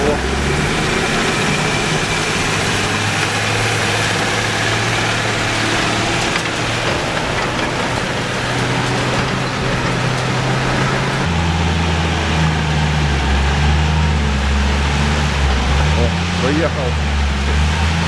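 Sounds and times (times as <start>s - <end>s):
half-track engine idling: 0.0s - 13.3s.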